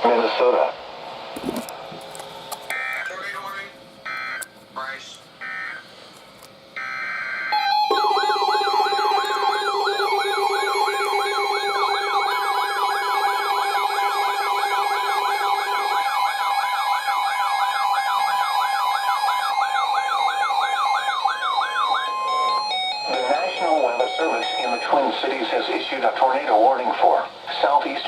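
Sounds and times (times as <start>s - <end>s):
steady alarm tone: 4.0s - 4.5s, 5.4s - 5.9s, 6.8s - 25.9s
warbling siren: 4.1s - 4.4s, 5.4s - 5.9s, 6.8s - 25.2s.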